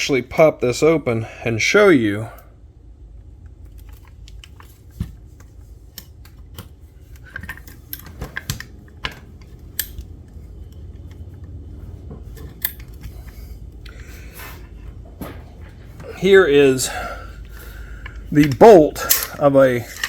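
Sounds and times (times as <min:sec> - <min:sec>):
metallic clicks and clanks: 0:18.0 - 0:20.0.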